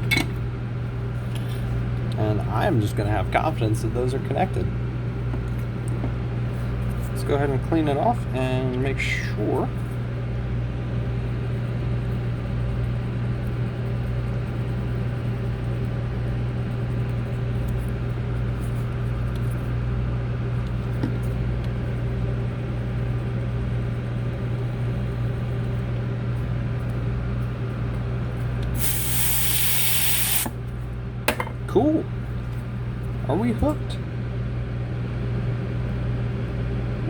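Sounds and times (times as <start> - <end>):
steady low hum: 0.0 - 37.0
aerosol spray hiss: 28.8 - 30.5.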